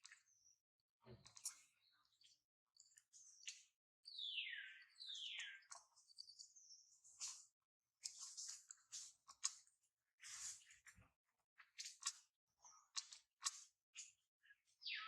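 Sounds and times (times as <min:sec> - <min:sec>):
faint clicks and rustles: 0:07.2 - 0:11.1.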